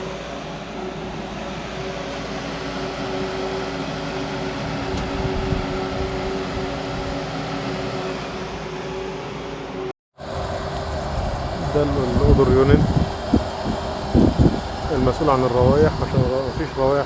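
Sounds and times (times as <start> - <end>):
machinery humming with whine: 0.0 - 17.0
low bump: 4.8 - 7.2.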